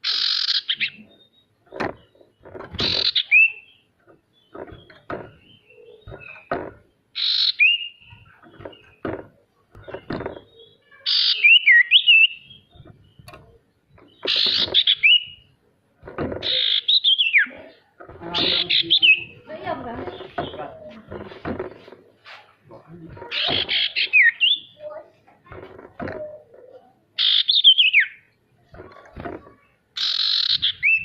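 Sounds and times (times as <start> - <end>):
songbird harsh rasping calls: 0.0 - 1.2, 2.0 - 5.0, 7.1 - 9.0, 9.8 - 13.3, 14.0 - 15.5, 16.4 - 20.6, 23.2 - 24.9, 27.2 - 28.9, 30.0 - 31.0.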